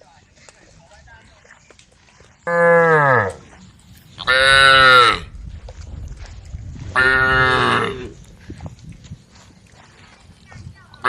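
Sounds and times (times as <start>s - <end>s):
cattle mooing: 2.4s - 3.4s, 4.2s - 5.3s, 7.0s - 8.2s.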